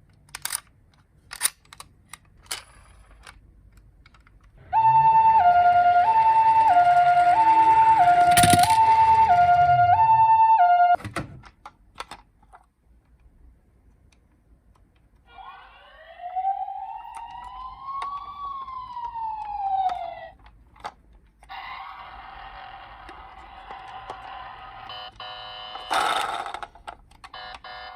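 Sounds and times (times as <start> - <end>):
toy siren wail: 4.7 - 11.0, 15.3 - 20.4, 21.5 - 26.3
toy two-tone ambulance siren: 4.7 - 11.0, 15.3 - 20.4, 21.4 - 26.6, 27.2 - 27.9
clicks: 17.0 - 21.6.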